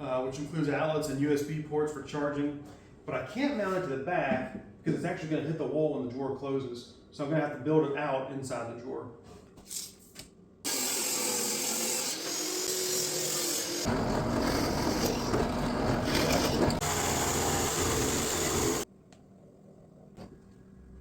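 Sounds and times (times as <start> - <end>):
power tool cutting wood: 10.7 - 18.9.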